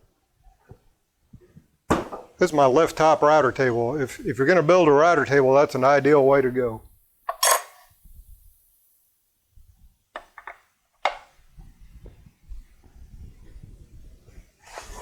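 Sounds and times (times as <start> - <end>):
tools knocking and clicking: 10.2 - 11.3.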